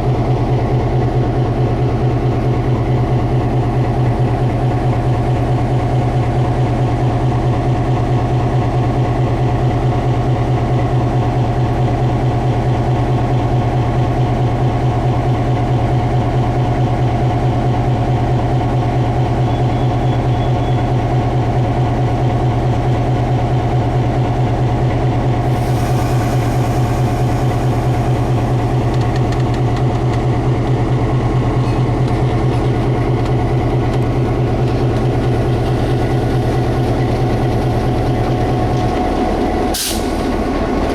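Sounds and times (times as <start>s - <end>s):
high hiss: 25.4s - 29.7s.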